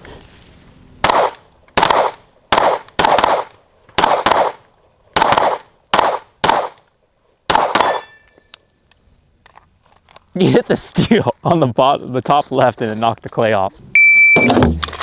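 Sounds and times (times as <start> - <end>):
handgun shots: 7.5 - 8.2.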